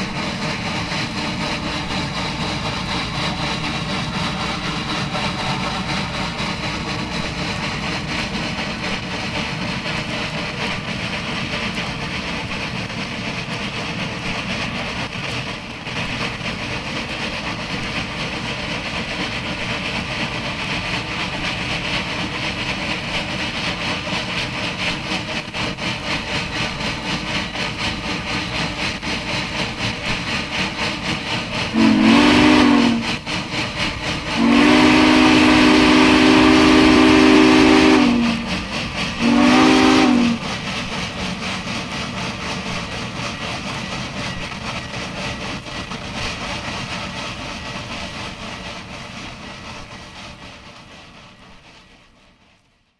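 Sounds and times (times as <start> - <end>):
steam locomotive exhaust beats: 0.0 - 52.9
steam whistle blast: 31.7 - 33.2, 34.4 - 38.5, 39.2 - 40.4.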